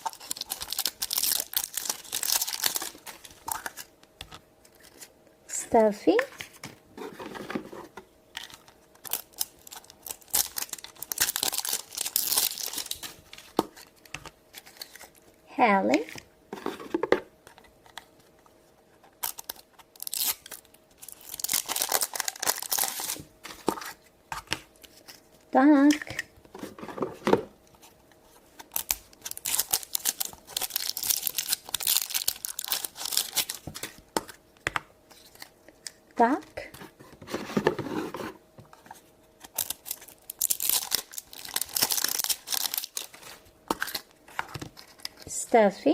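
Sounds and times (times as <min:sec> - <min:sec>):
plastic packaging crinkling and tearing: 0:00.0 - 0:04.0, 0:08.4 - 0:15.2, 0:19.1 - 0:24.0, 0:28.6 - 0:34.1, 0:39.4 - 0:45.3.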